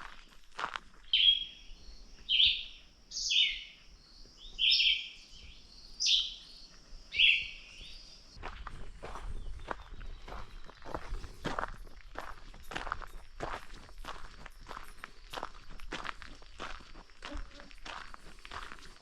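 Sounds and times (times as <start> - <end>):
footsteps on track: 0.0 - 1.2, 6.3 - 19.0
songbird singing: 0.0 - 19.0.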